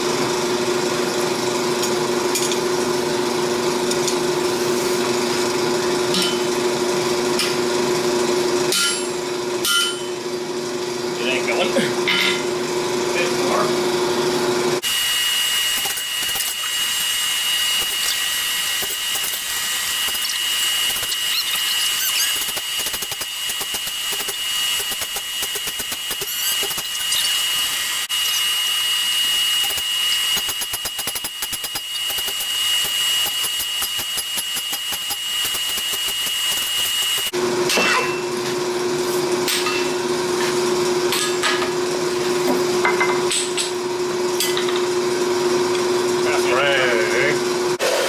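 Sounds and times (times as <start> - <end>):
power tool whining: 10.6 - 37.4.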